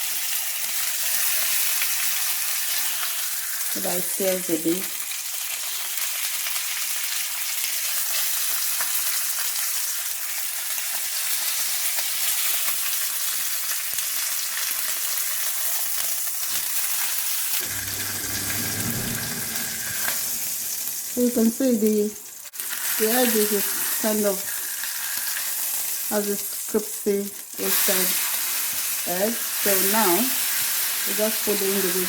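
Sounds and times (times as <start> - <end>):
meat sizzling in a pan: 0.0 - 32.0
low hum: 17.6 - 21.2.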